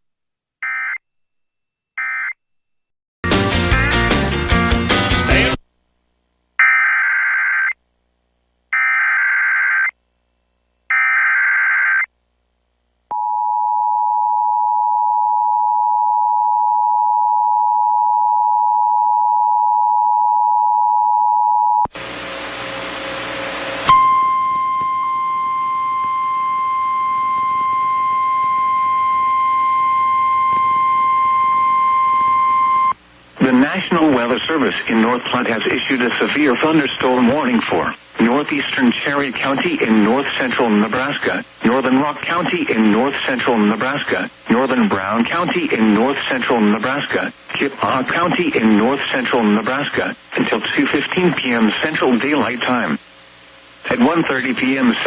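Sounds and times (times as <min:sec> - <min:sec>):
warbling digital data chirp: 0:06.6 - 0:07.8
steady warning alarm tone: 0:23.9 - 0:33.0
two-tone attention signal: 0:23.9 - 0:33.0
radio hiss: 0:33.0 - 0:55.0.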